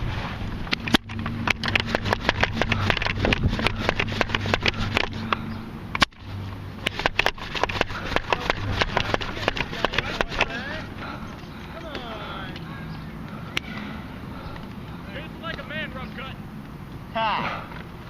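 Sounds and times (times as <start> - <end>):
steady low hum: 0.0 - 18.0
toy blasters clicking: 0.8 - 5.4, 6.8 - 10.6.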